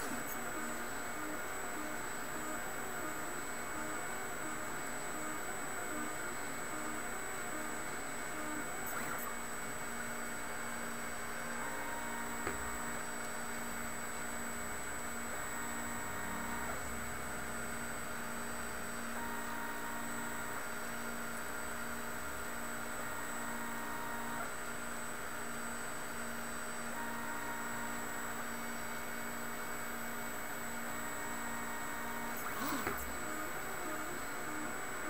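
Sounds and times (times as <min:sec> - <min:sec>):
stepper motors whining: 0:00.0 - 0:20.7, 0:30.2 - 0:35.0.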